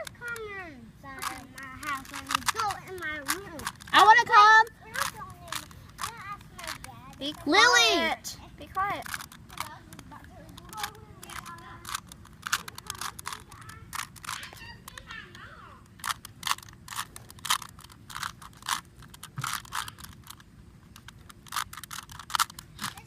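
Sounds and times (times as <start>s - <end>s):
plastic puzzle cube clicks: 1.2s - 4.1s, 8.8s - 23.0s.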